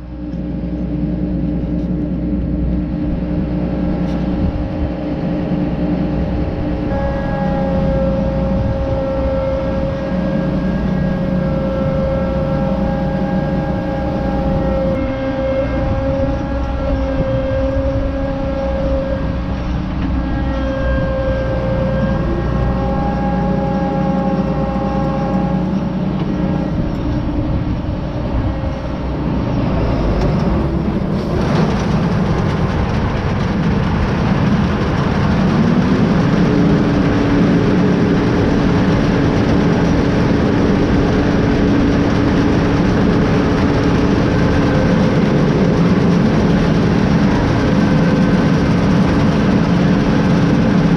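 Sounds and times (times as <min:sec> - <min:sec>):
combine harvester running: 0:00.0 - 0:50.9
loud rushing noise: 0:00.0 - 0:50.9
rising tone: 0:01.0 - 0:32.3.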